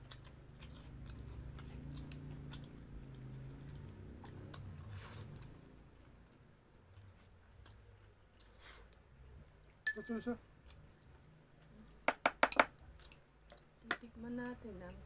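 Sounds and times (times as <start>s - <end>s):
chewing and biting food: 0.0s - 9.8s, 10.6s - 12.0s.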